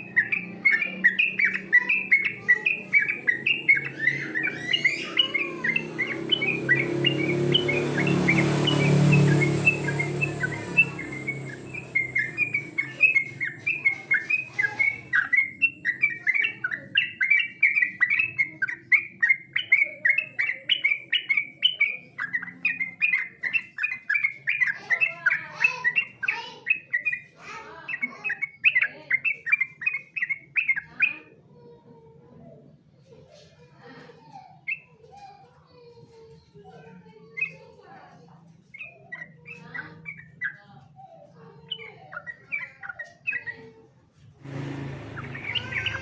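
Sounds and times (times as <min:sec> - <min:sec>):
bird chirping song: 0:00.0 - 0:46.0.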